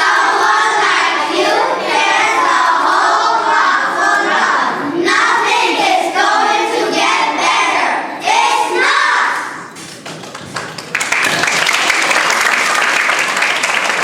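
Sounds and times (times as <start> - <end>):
children shouting and singing: 0.0 - 9.7.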